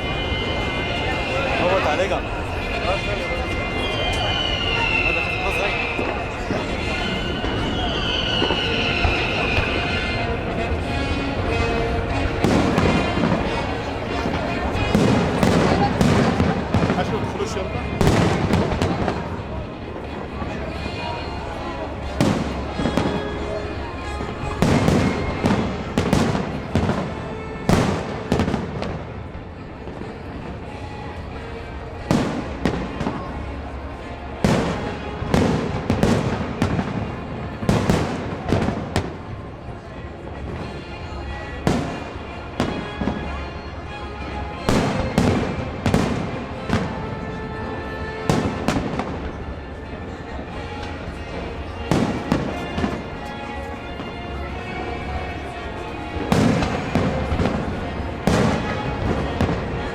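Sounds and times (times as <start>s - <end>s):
fireworks bangs: 0.0s - 19.4s, 24.0s - 29.1s, 34.4s - 39.3s, 44.7s - 46.9s, 48.3s - 49.3s, 51.9s - 53.3s, 54.6s - 59.9s
fireworks crackling: 0.0s - 21.2s, 22.0s - 30.4s, 44.6s - 49.3s, 50.8s - 59.9s.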